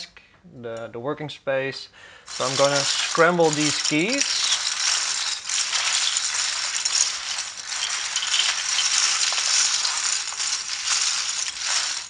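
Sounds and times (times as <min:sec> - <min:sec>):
plastic keycaps clattering: 0:02.3 - 0:12.0.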